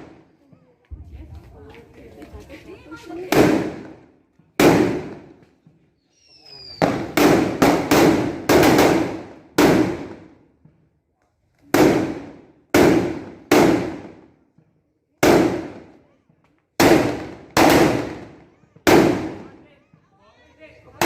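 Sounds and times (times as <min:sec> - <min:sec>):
firecrackers banging: 0:00.0 - 0:05.6, 0:06.4 - 0:10.6, 0:11.6 - 0:14.5, 0:15.2 - 0:16.0, 0:16.8 - 0:19.7.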